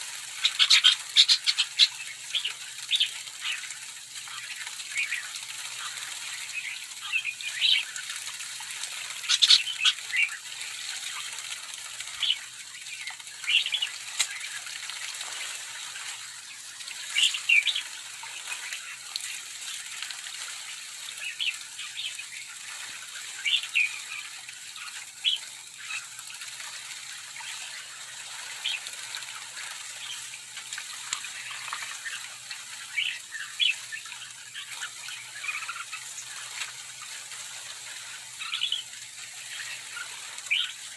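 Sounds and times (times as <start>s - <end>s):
birds splashing in water: 0.0s - 40.9s
wing flutters: 0.0s - 40.9s
birds chirping: 0.4s - 3.7s, 9.1s - 10.4s, 38.3s - 38.9s, 39.5s - 40.8s.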